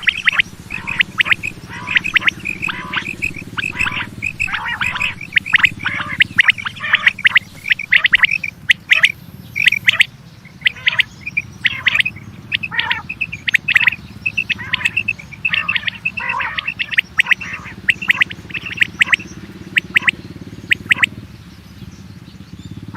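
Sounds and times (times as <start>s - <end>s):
quail chirping: 0.0s - 21.2s
steady low hum: 0.0s - 21.4s.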